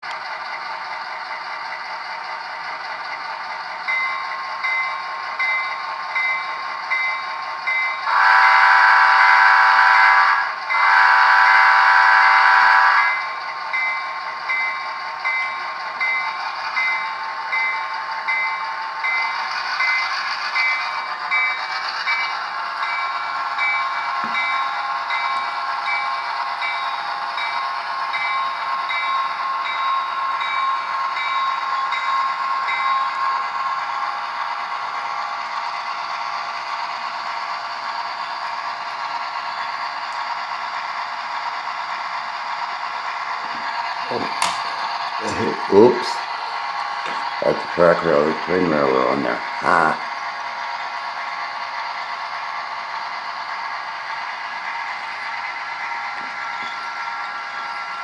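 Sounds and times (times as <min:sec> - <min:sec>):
steam engine chuffing: 0:00.1 - 0:58.0
locomotive whistle blasts: 0:08.1 - 0:13.2.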